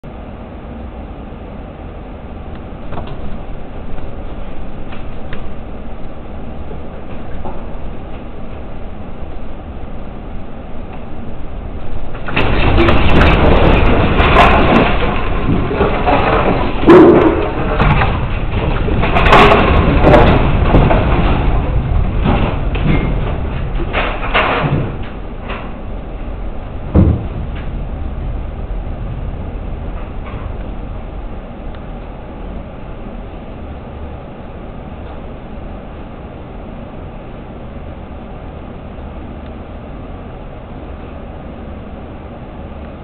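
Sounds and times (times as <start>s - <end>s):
earthquake rumble: 0.0s - 43.0s
doors and fittings rattling: 2.8s - 34.0s
sharp bangs: 26.5s - 31.6s.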